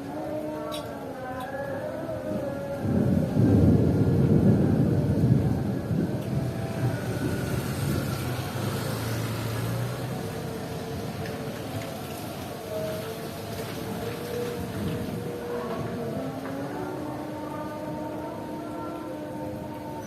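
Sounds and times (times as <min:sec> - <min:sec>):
heavy rain: 0:00.0 - 0:20.0
thunder rumbling: 0:02.2 - 0:18.6.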